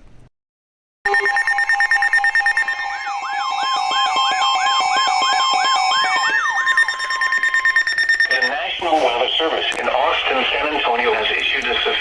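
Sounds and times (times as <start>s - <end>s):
two-tone alert signal: 1.1s - 9.0s
rising electronic sweep: 1.7s - 8.2s.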